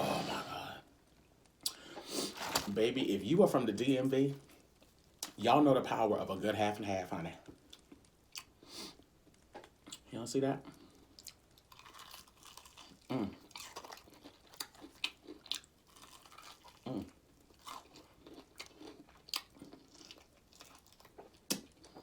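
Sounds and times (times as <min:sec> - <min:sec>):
person humming mm: 0:00.0 - 0:00.8
crunching and chewing fried food: 0:04.3 - 0:05.4, 0:07.2 - 0:10.0, 0:10.6 - 0:22.0.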